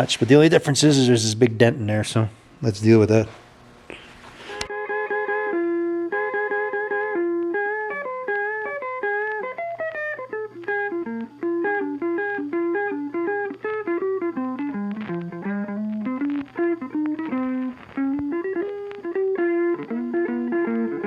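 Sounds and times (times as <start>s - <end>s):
plucked guitar melody: 4.5s - 21.0s.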